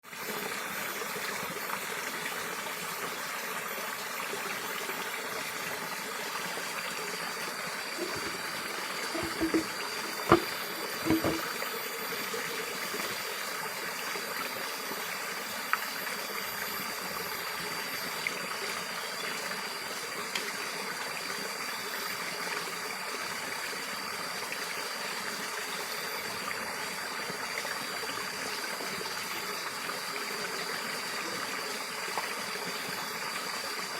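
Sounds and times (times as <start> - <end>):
mountain stream running: 0.1 - 33.9
short knocks: 8.0 - 11.5.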